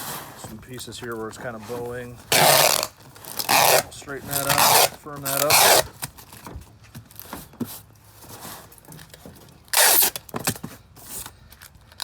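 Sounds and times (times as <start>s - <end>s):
packing tape screeching off roll: 2.3s - 6.1s, 9.7s - 10.3s.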